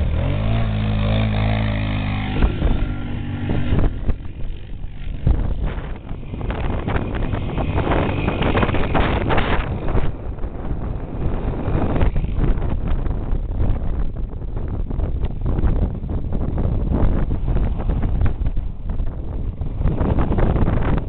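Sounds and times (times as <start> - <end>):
quad engine revving: 0.0 - 13.8
wind buffeting microphone: 0.0 - 21.0.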